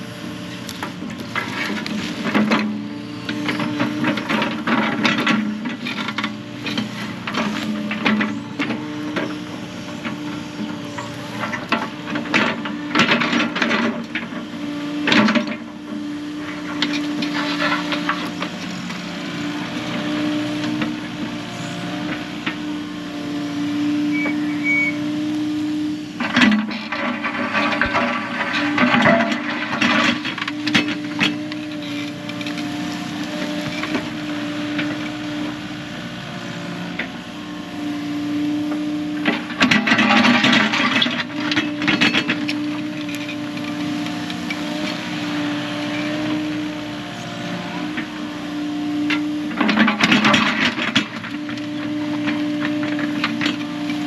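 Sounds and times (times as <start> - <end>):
excavator engine and hydraulics: 0.0 - 54.0.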